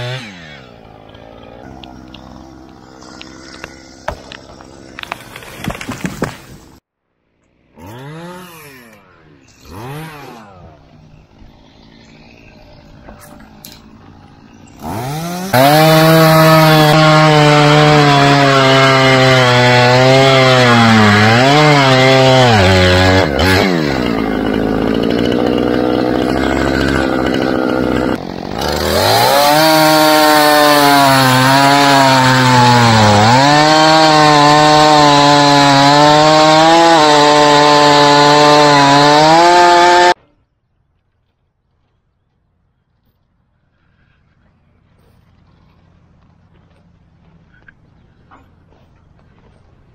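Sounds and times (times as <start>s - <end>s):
chainsaw cutting logs: 0.0s - 6.8s, 7.6s - 40.2s.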